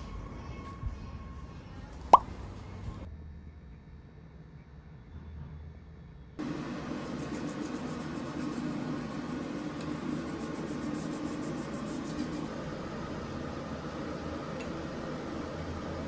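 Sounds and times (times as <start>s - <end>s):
machine hum with hiss: 6.4s - 16.0s.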